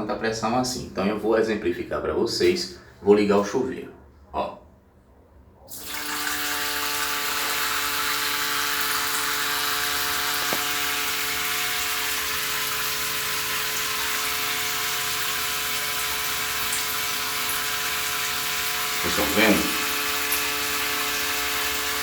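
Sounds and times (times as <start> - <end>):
water rushing through shower: 5.7 - 22.0.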